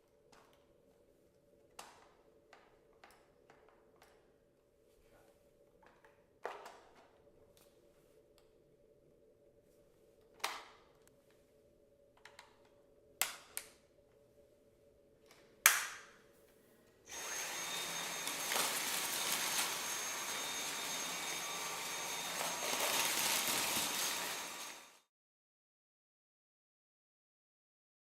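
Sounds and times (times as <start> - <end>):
cordless vacuum running: 17.1 - 25.1.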